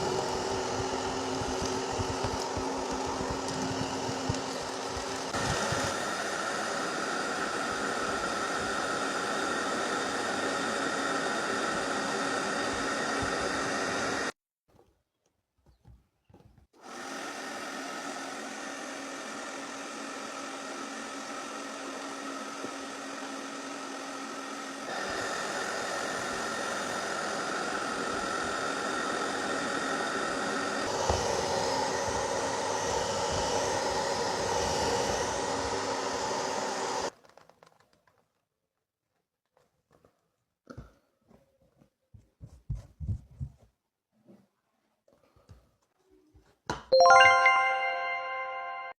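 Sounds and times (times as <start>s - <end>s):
vacuum cleaner motor whining: 0.0s - 14.4s, 16.8s - 37.2s.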